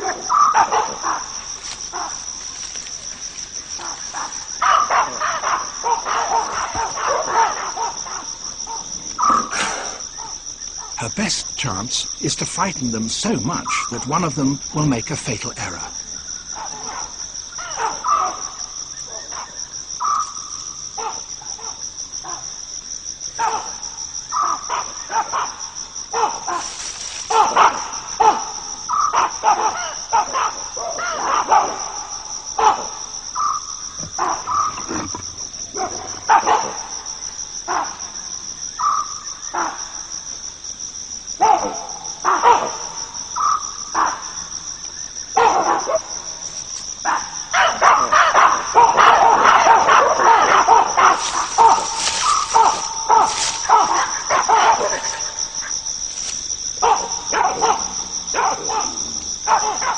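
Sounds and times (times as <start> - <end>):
baboons calling: 0.0 - 22.4, 24.3 - 37.0, 38.8 - 39.8, 45.4 - 59.9
high-pitched insect chorus: 0.0 - 59.9.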